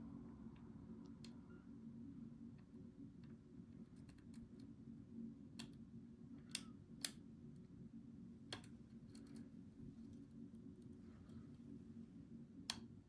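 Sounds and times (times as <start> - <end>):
steady low hum: 0.0 - 13.0
lock pick clicking on pins: 6.4 - 7.2.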